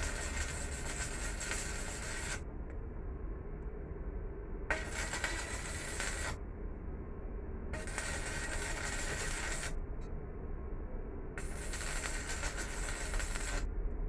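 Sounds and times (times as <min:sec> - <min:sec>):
welding arc crackling and hissing: 0:00.0 - 0:02.4, 0:04.7 - 0:06.4, 0:07.8 - 0:09.8, 0:11.4 - 0:13.7.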